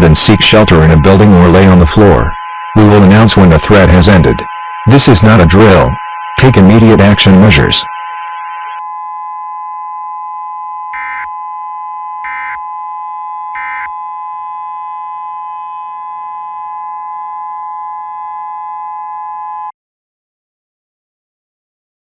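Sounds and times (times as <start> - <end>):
two-pitch electronic alert tone: 0.0 - 16.2
short data bursts: 0.0 - 16.7.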